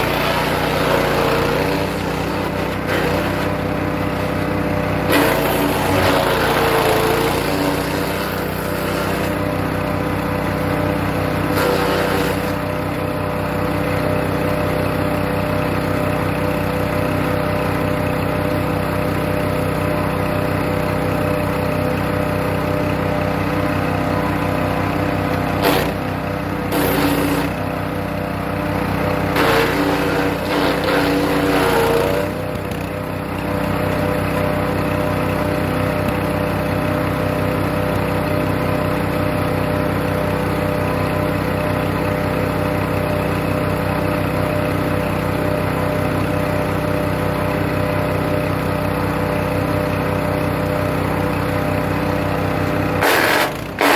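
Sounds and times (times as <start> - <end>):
wood chipper engine running: 0.0 - 53.9
branches being chipped: 25.6 - 26.1, 26.7 - 27.6, 29.4 - 32.8.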